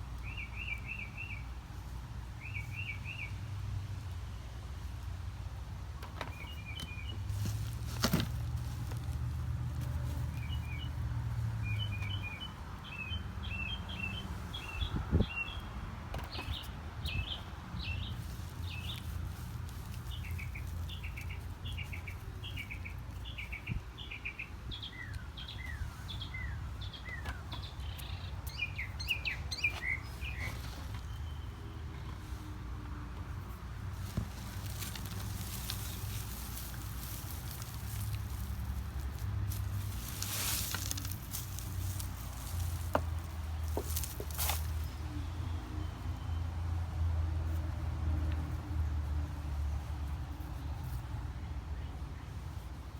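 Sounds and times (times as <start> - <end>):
small birds chirping: 0.2 - 1.5, 10.0 - 32.4, 33.4 - 46.3.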